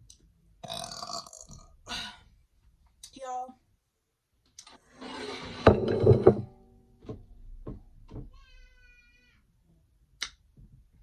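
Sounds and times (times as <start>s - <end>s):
loud drawn-out burp: 0.6s - 1.8s
high-pitched cry: 8.3s - 9.4s.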